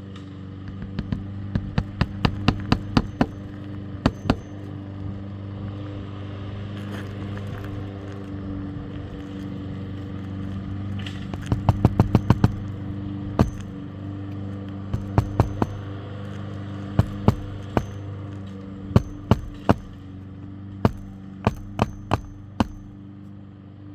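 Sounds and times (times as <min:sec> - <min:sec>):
nails driven into roof shingles: 0:01.0 - 0:04.8, 0:09.2 - 0:14.0, 0:15.0 - 0:20.2, 0:20.9 - 0:23.0.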